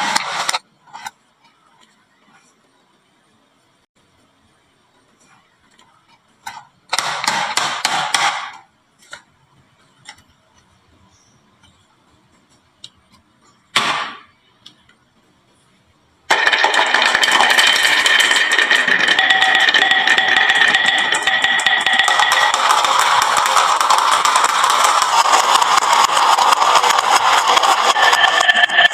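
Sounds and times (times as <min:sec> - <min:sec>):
marbles clattering down wooden run: 0:16.3 - 0:28.9.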